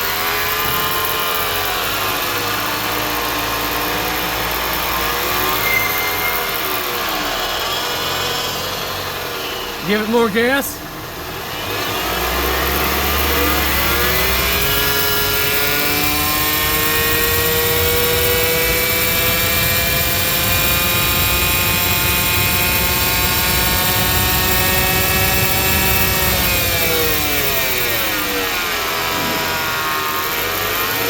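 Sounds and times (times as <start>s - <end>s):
car engine revving: 10.8s - 31.0s.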